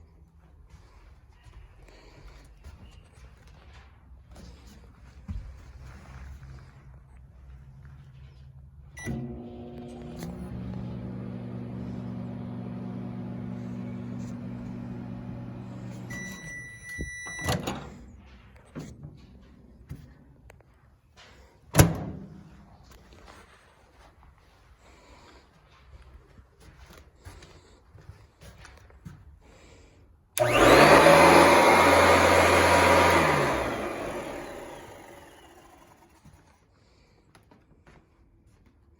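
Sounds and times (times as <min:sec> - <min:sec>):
microwave long beep: 0:09.0 - 0:10.5, 0:13.1 - 0:17.9
microwave oven humming: 0:09.0 - 0:18.0, 0:30.4 - 0:36.1.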